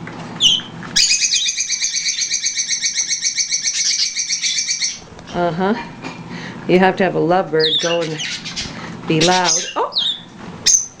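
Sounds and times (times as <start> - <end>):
lovebird chirping rapidly: 0.4 - 5.0, 7.6 - 11.0.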